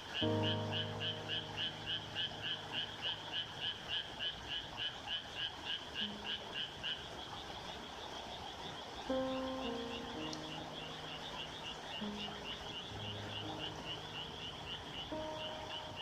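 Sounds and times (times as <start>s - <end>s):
frog croaking: 0.0s - 16.0s.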